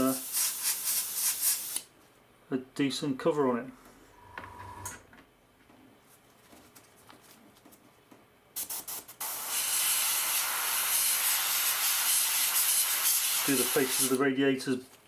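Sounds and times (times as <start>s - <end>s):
paint spray hissing: 8.6s - 14.2s.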